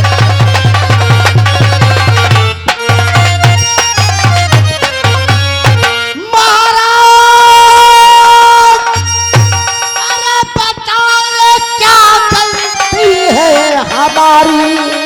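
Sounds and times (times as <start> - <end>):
fast drum beat: 0.0 - 4.7.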